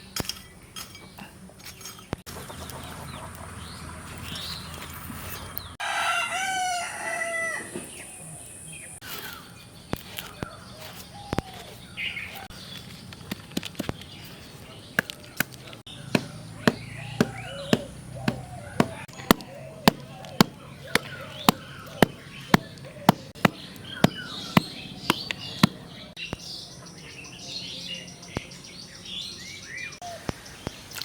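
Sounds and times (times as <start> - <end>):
rooster crowing: 5.8 - 7.8
faint chicken calls: 5.8 - 9.5
sharp knocks: 16.1 - 25.8.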